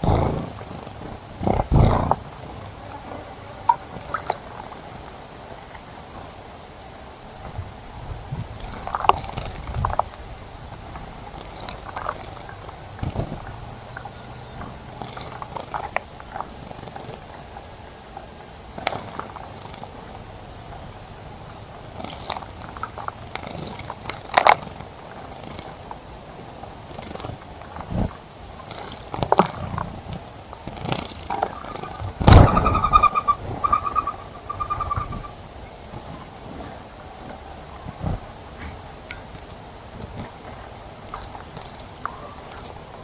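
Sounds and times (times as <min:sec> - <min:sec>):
outdoor background hiss: 0:00.0 - 0:43.0
wings fluttering: 0:31.3 - 0:35.4
high bird chirps: 0:31.6 - 0:35.4.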